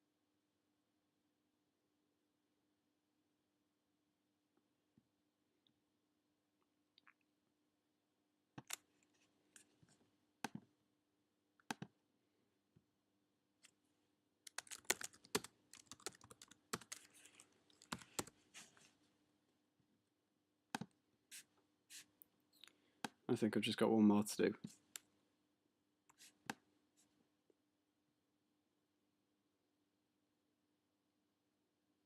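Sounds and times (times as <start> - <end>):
keyboard typing: 14.5 - 18.4.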